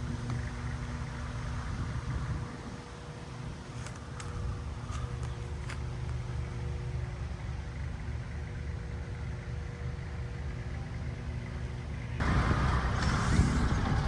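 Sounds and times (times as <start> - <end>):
engine rumbling: 0.0 - 14.0
loud rushing noise: 12.2 - 14.0.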